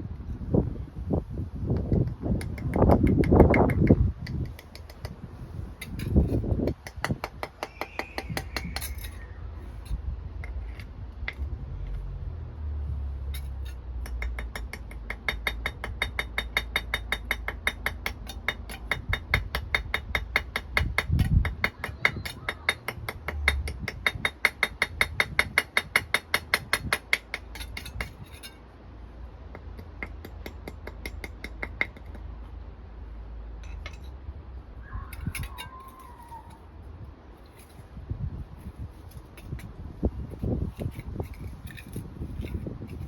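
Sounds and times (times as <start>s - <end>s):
hand tool clicking rapidly: 2.4s - 5.2s.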